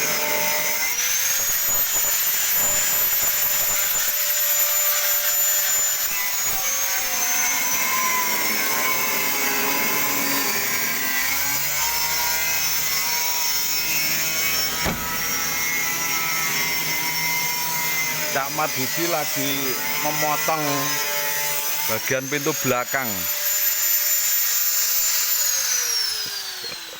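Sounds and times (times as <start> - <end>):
angle grinder cutting sheet metal: 0.0 - 26.9.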